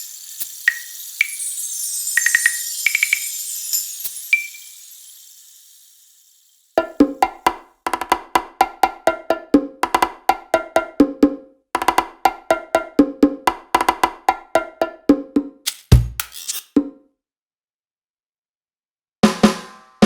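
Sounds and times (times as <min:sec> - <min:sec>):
wood-block-like percussion hits: 0:00.7 - 0:01.6, 0:02.2 - 0:03.4, 0:06.8 - 0:17.0.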